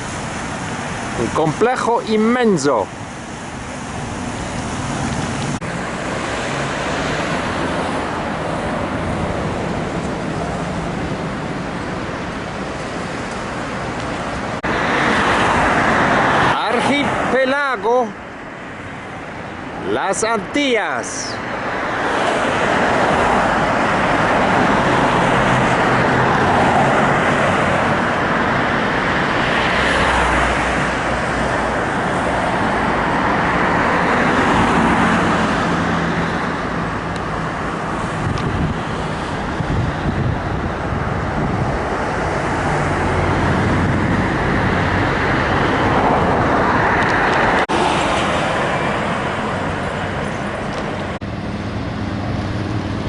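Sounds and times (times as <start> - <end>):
road noise: 0.0 - 53.0
vehicle engine: 21.2 - 53.0.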